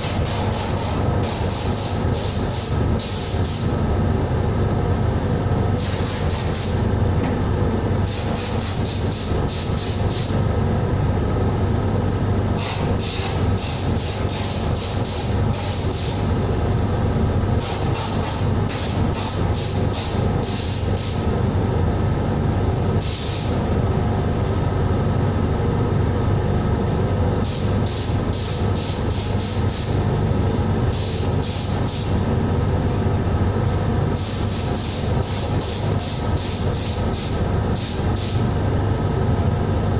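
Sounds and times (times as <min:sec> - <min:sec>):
sandblasting gun hissing: 0:00.0 - 0:03.8, 0:05.8 - 0:06.8, 0:08.1 - 0:10.4, 0:12.6 - 0:16.4, 0:17.6 - 0:21.2, 0:23.0 - 0:23.6, 0:27.4 - 0:30.0, 0:30.9 - 0:32.2, 0:34.2 - 0:38.5
air compressor humming: 0:00.0 - 0:39.9.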